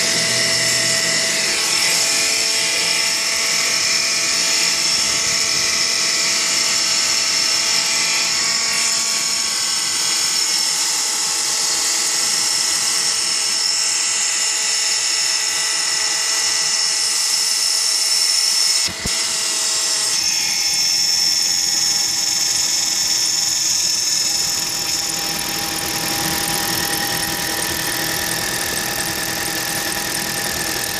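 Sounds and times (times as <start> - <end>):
high-pitched pulley whistle: 15.2 - 30.9.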